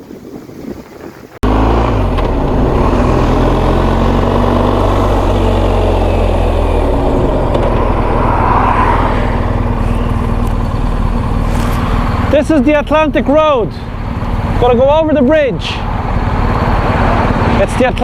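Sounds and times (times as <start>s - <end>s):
wind rush on microphone: 0.0s - 12.3s
motorcycle engine running: 1.4s - 18.0s.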